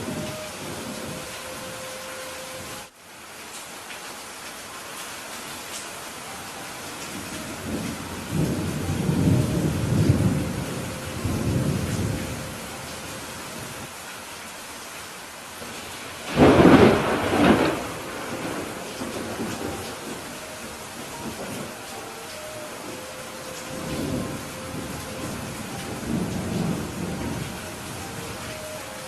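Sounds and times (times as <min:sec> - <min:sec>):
thunder rumbling: 0:00.0 - 0:02.9, 0:07.1 - 0:13.9, 0:15.6 - 0:29.0
heavy rain: 0:00.0 - 0:29.0
thunderclap: 0:16.2 - 0:20.3.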